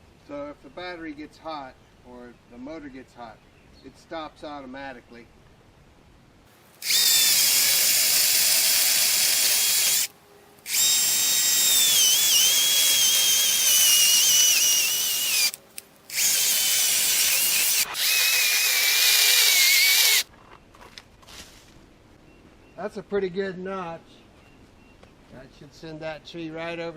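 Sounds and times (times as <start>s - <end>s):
electric chainsaw cutting wood: 6.8s - 10.1s, 10.7s - 20.3s.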